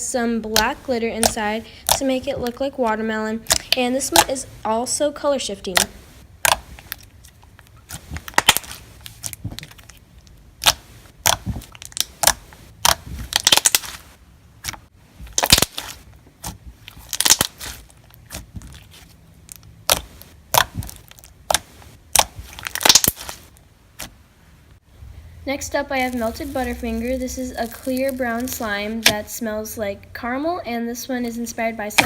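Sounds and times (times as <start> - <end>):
slime crackling and popping: 0.5 - 2.5, 3.4 - 4.4, 5.7 - 24.1, 25.9 - 29.2.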